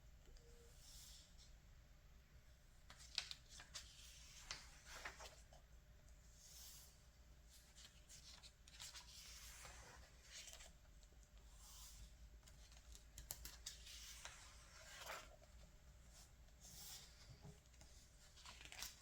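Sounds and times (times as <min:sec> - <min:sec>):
magazine pages rustling: 0:02.9 - 0:05.5, 0:07.7 - 0:10.8, 0:12.6 - 0:16.3, 0:17.0 - 0:19.0.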